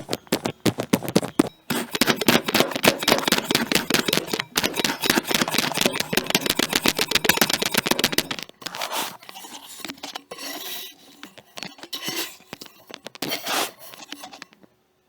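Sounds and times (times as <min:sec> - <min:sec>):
kinetic sand being cut: 0:13.2 - 0:14.0.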